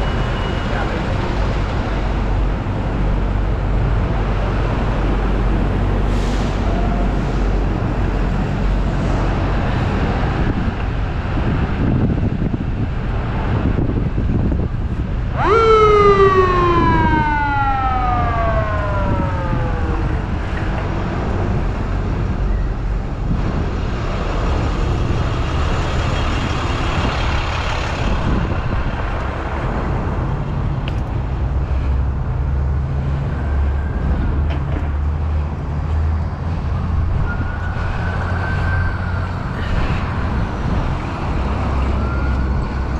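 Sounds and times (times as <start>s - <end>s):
low engine hum: 0.0s - 42.9s
steady rushing noise: 1.3s - 33.2s
emergency vehicle siren: 15.2s - 22.9s, 36.5s - 42.9s.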